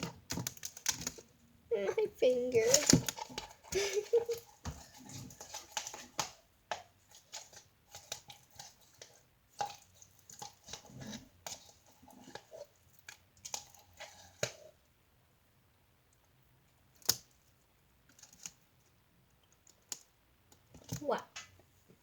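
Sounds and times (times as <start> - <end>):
sticky clicks and squishes: 0.0 - 1.3, 2.3 - 4.4
slime squelching: 0.0 - 14.8.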